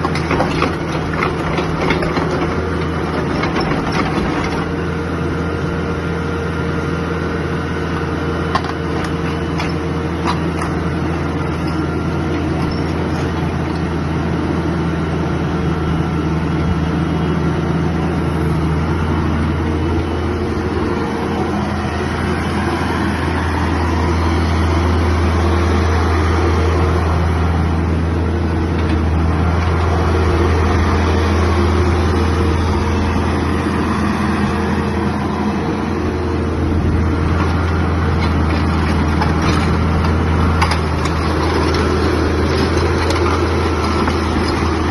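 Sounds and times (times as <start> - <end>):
excavator diesel engine running: 0.0 - 44.9.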